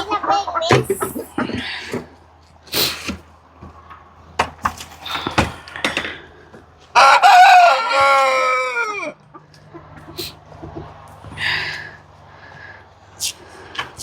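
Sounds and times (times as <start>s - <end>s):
rooster crowing: 6.9s - 9.2s.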